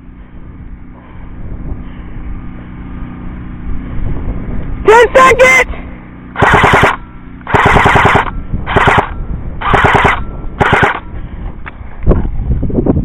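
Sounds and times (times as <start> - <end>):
airsoft rifle firing bursts: 6.4 - 11.0.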